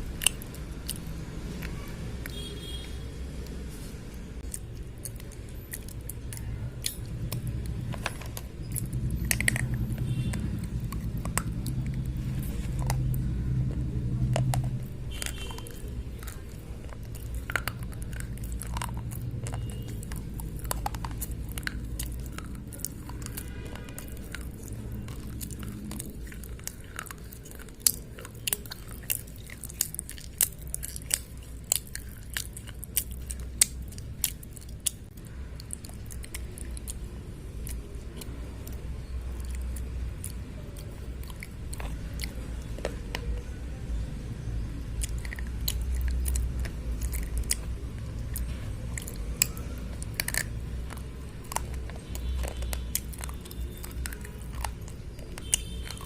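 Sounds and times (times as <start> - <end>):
crunchy chewing clicks: 0.0 - 56.0.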